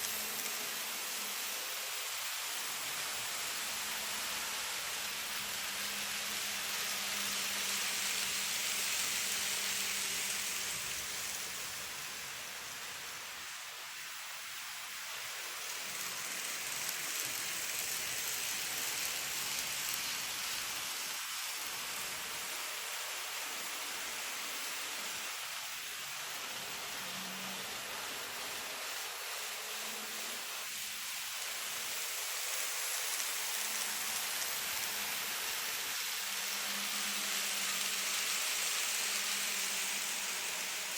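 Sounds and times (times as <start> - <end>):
model train rolling whir: 0.0 - 40.9.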